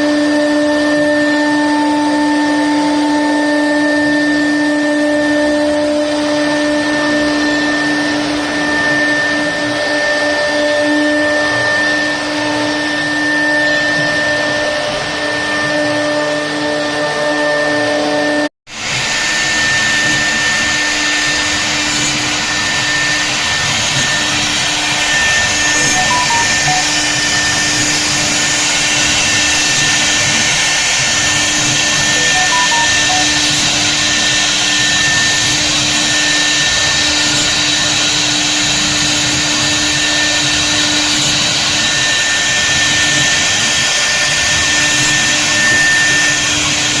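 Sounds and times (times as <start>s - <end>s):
router spindle whining: 0.0s - 47.0s
loud rushing cutting noise: 18.7s - 47.0s.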